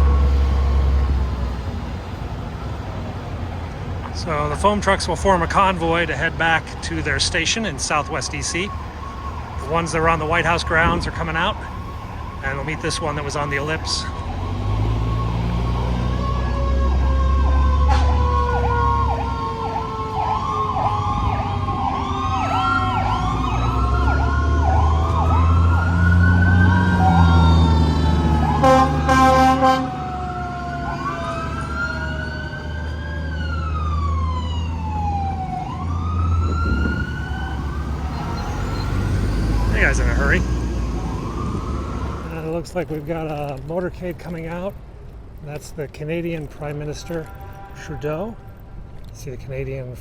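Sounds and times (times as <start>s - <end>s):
fire truck sirens wailing: 0.0s - 45.4s, 46.4s - 49.2s
truck engine rumble: 0.0s - 50.0s
horn blast: 17.8s - 18.4s, 28.3s - 30.1s.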